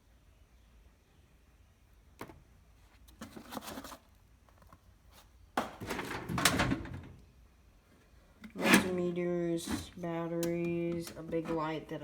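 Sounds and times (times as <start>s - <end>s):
metal drawer scraping rattle: 5.8s - 7.2s, 8.5s - 10.0s.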